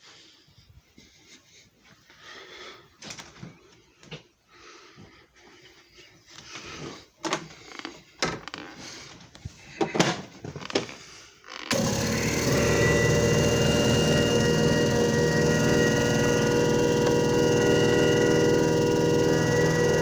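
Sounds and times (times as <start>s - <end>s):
machine motor humming: 11.7s - 20.0s.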